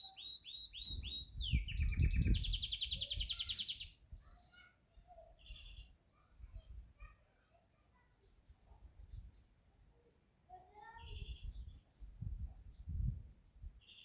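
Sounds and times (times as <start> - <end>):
canary singing: 0.0 - 4.7, 5.4 - 6.0.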